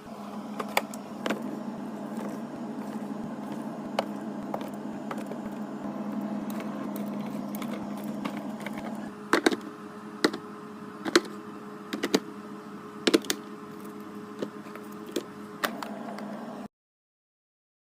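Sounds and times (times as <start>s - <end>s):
fridge hum: 0.0s - 16.7s.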